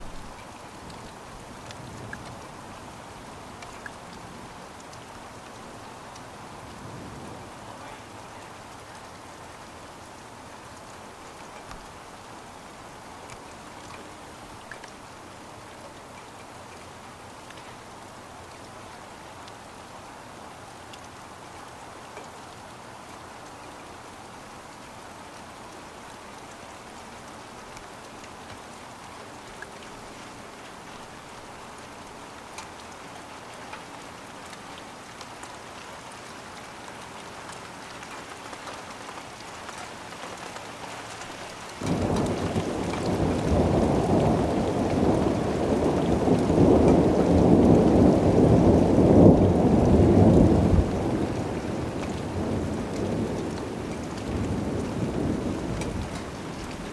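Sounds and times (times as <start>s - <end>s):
steady rain falling: 0.0s - 56.9s
thunder rumbling: 41.8s - 56.9s.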